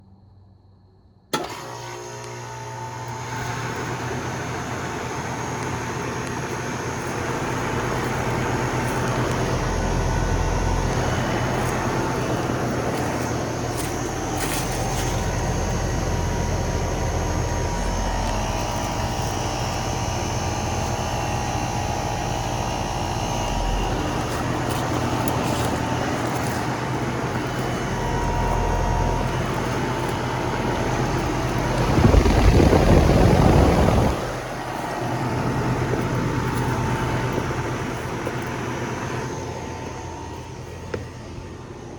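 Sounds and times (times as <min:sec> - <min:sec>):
air conditioner unit humming: 0:01.4 - 0:41.9
loud low rumble: 0:26.7 - 0:34.7.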